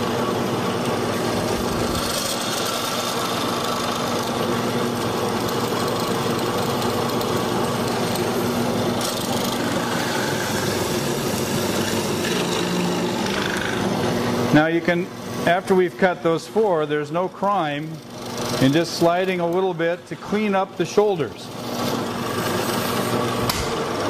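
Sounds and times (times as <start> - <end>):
drill press motor humming: 0.0 - 14.5, 16.8 - 20.3, 21.4 - 24.0
mortising bit cutting wood: 1.4 - 4.4, 7.9 - 14.1, 21.5 - 23.2.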